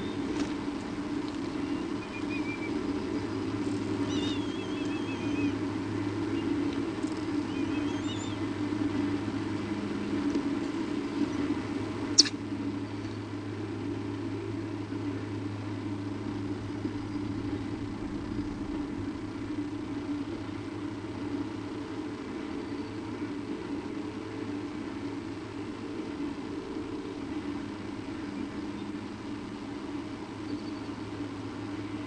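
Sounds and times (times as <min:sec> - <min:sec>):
faint wavering chirps: 0:00.0 - 0:00.3, 0:01.5 - 0:09.1, 0:11.0 - 0:13.1, 0:22.4 - 0:23.8, 0:30.3 - 0:31.1
low rumble: 0:00.0 - 0:22.9.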